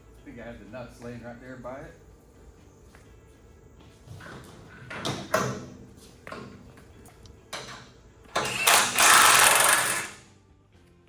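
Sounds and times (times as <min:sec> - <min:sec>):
pneumatic impact wrench hammering: 0:07.6 - 0:10.2
metal parts clanking: 0:08.3 - 0:10.2.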